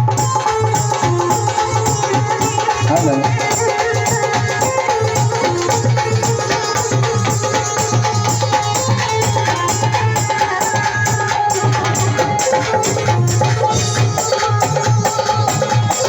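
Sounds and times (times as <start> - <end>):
dhol drumming: 0.0 - 16.0.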